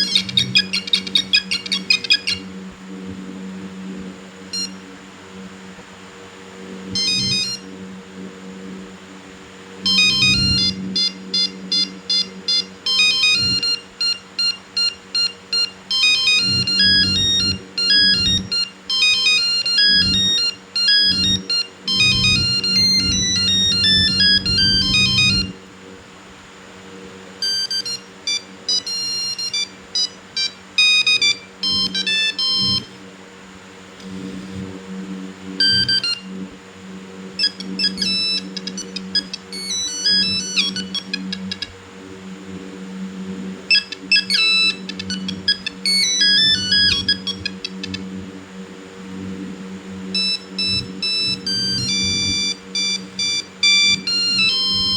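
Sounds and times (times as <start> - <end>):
monophonic ringtone melody: 0.0 - 2.5, 4.6 - 4.8, 7.0 - 7.7, 9.8 - 25.5, 27.4 - 33.0, 35.6 - 36.3, 37.4 - 41.7, 43.7 - 48.0, 50.2 - 54.9
faint steady hum: 0.0 - 54.9.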